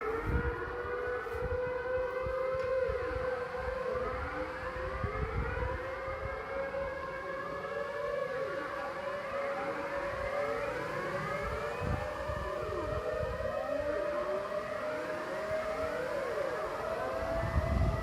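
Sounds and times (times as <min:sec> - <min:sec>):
air raid siren wailing: 0:00.0 - 0:18.0.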